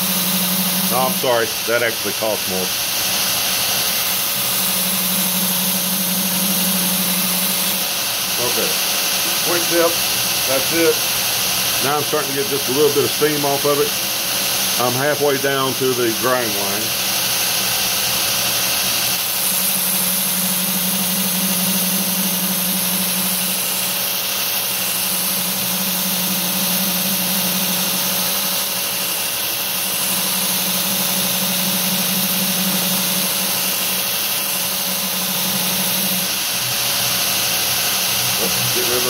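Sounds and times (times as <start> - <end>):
abrasive belt hissing: 0.0 - 20.1, 22.6 - 39.0
low grinding hum: 30.0 - 39.0.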